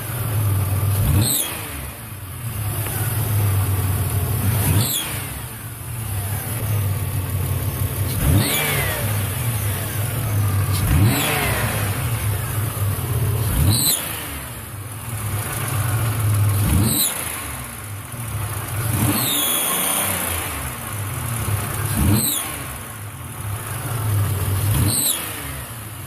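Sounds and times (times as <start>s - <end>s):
car engine revving: 0.0s - 26.0s.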